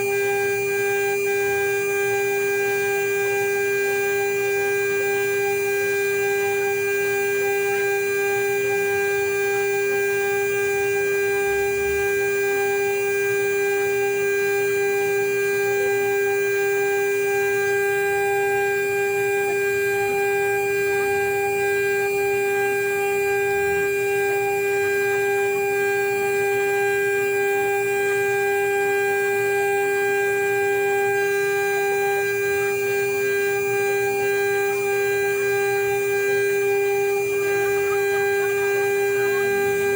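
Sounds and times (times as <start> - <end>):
router spindle whining: 31.0 - 39.9.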